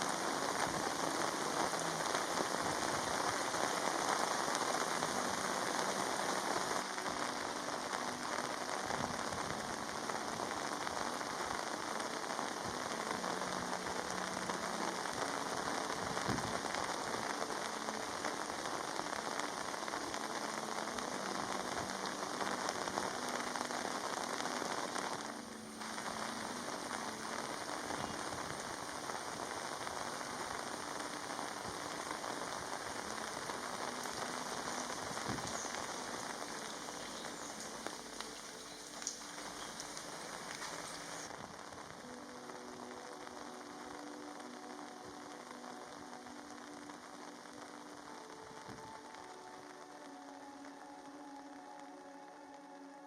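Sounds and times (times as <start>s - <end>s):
rain pattering on surfaces: 0.0s - 53.0s.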